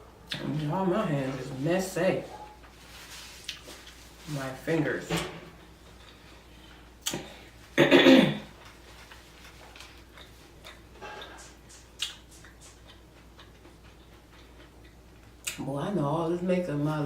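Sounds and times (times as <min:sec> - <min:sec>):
wet mouth smacks and clicks: 0:11.4 - 0:13.6.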